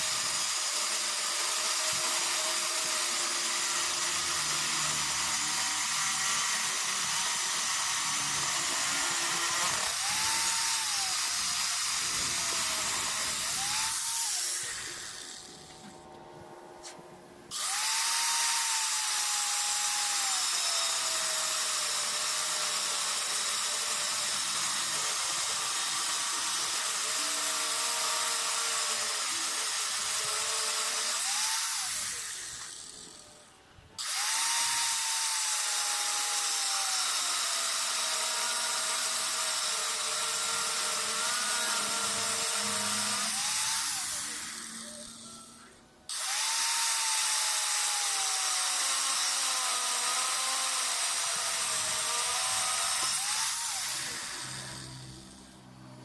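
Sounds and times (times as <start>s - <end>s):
angle grinder grinding steel: 0.0s - 16.2s, 16.8s - 56.0s
grinder winding down: 0.0s - 16.2s, 17.5s - 56.0s.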